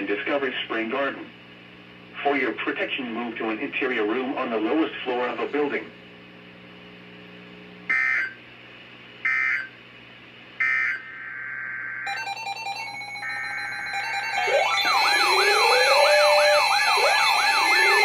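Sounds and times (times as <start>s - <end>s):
digital data tone bursts: 7.9s - 8.4s, 9.3s - 9.7s, 10.6s - 18.0s
steady electronic tones: 7.9s - 8.4s, 9.2s - 9.7s, 10.6s - 18.0s.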